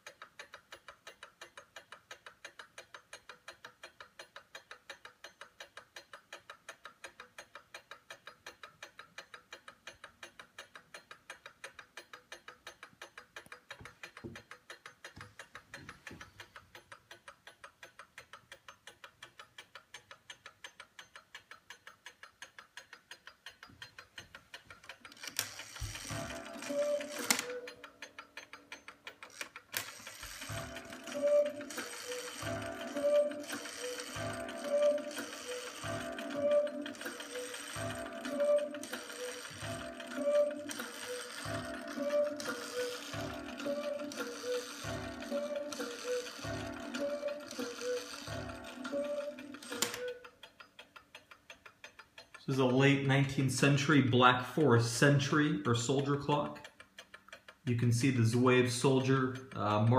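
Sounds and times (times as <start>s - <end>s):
clock ticking fast: 0.0s - 59.9s
cuckoo clock call: 20.1s - 59.9s.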